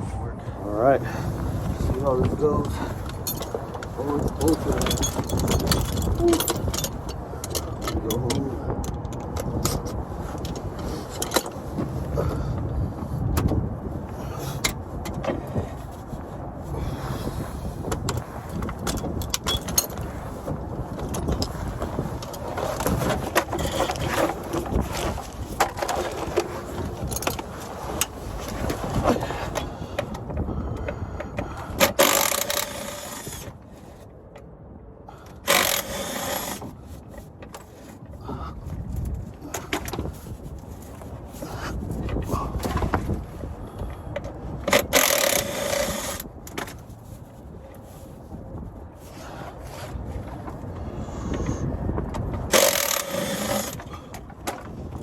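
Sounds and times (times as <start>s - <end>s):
wind rumbling on microphone: 0.0s - 55.0s
tools clicking and scraping: 2.2s - 12.2s, 17.8s - 31.0s, 31.7s - 33.6s, 35.3s - 38.1s, 43.8s - 47.0s, 52.4s - 54.9s.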